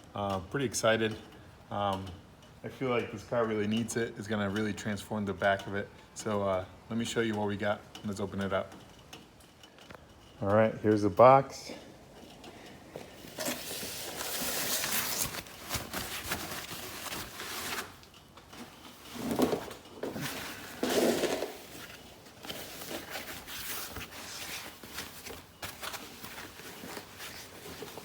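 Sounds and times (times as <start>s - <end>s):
packaging scraping and rustling: 13.0s - 28.0s
cardboard box being opened: 13.3s - 18.1s.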